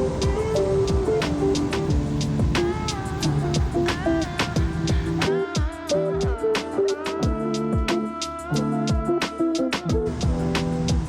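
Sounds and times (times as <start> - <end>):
held bass notes: 0.0 - 6.6, 7.2 - 11.0
gliding melody line: 0.0 - 11.0
deep kick drums: 1.9 - 6.4, 9.9 - 11.0.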